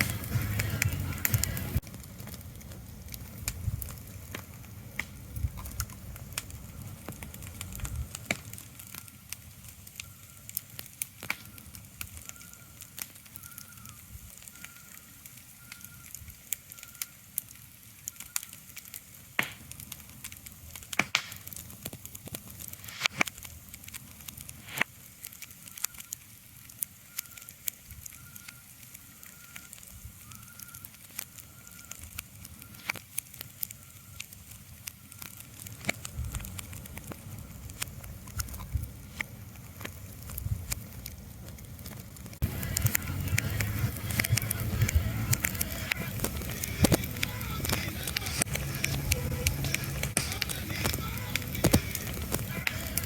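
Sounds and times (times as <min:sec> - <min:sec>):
fire crackling and popping: 0:00.0 - 0:53.0.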